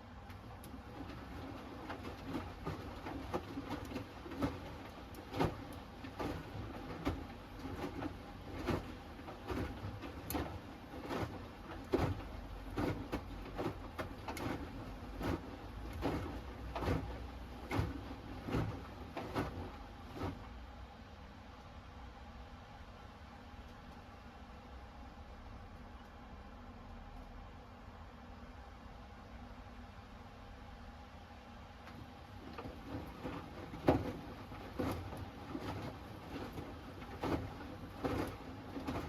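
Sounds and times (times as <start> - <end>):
laundry sloshing in washing machine drum: 0.0 - 20.8, 31.8 - 39.0
washing machine hum: 0.0 - 39.0.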